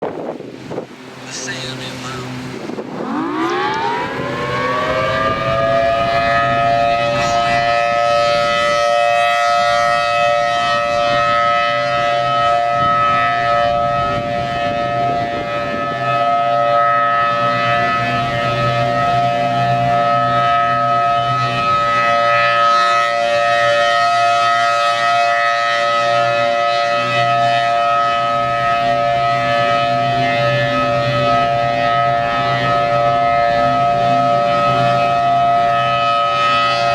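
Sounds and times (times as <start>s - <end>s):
warning siren: 0.0s - 36.9s.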